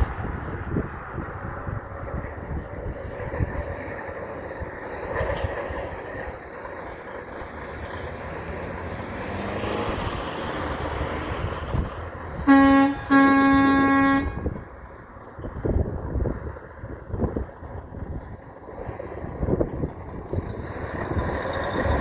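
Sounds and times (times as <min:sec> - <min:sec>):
truck passing: 0:00.0 - 0:22.0
air horn blasts: 0:12.4 - 0:14.7.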